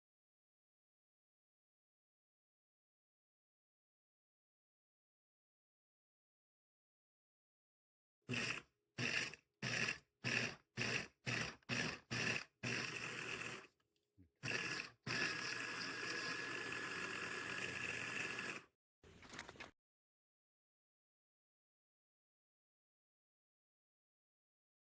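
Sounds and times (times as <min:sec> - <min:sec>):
immersion blender motor whine: 0:08.3 - 0:13.8, 0:14.4 - 0:19.7.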